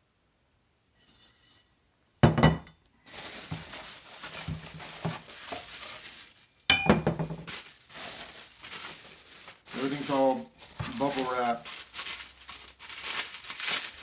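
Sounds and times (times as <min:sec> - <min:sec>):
rustling and rattling: 0:03.1 - 0:14.0.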